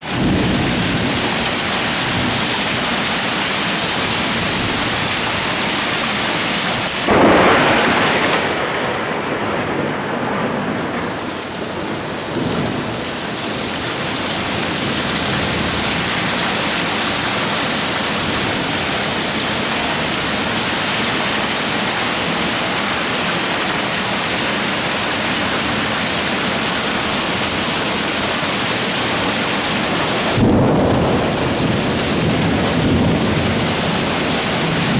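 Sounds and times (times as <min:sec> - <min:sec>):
heavy rain pouring: 0:00.0 - 0:34.9
thunderclap rumbling: 0:06.9 - 0:13.0, 0:25.2 - 0:34.9.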